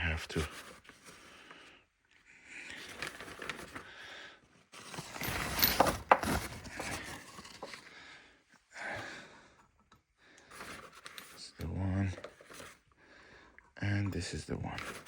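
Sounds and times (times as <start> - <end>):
metal parts scraping and rustling: 4.8 - 7.8, 10.6 - 12.8.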